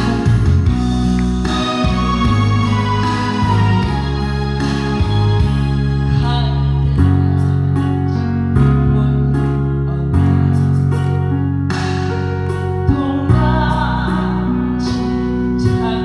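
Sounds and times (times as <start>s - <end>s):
sustained chords: 0.0s - 7.8s
bass line: 0.0s - 16.0s.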